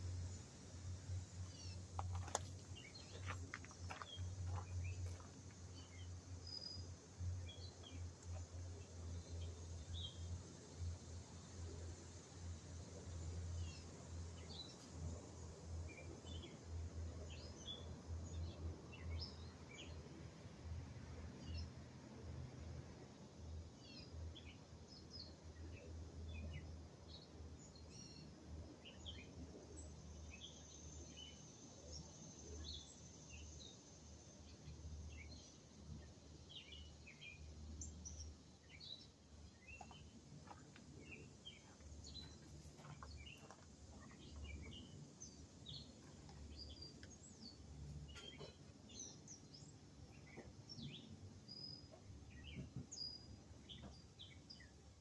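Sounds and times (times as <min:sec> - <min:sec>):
small birds chirping: 0:01.3 - 0:11.3, 0:23.7 - 0:55.0.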